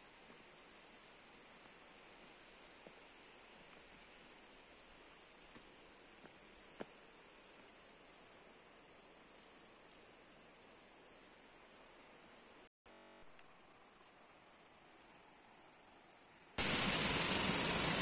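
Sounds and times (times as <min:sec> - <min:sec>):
high-pitched insect chorus: 0:00.0 - 0:12.7, 0:13.6 - 0:18.0.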